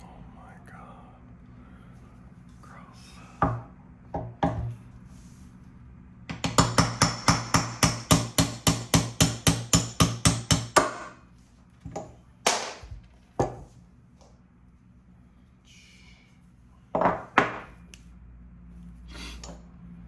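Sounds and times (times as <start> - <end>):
hammer striking metal hub: 6.3 - 11.2.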